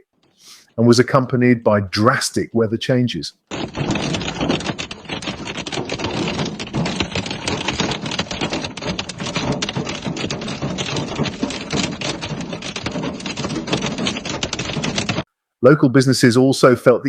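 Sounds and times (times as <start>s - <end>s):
hailstones clattering on hard surfaces: 3.5s - 15.2s.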